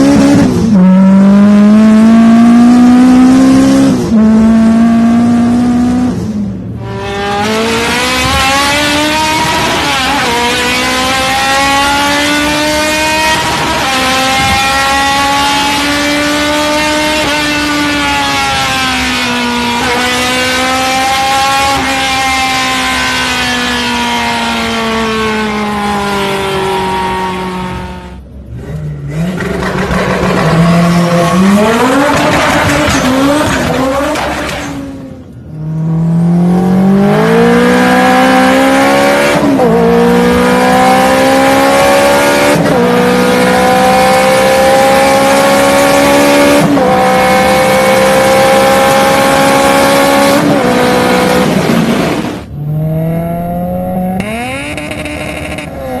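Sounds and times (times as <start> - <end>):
car engine running under load: 28.2 - 35.6.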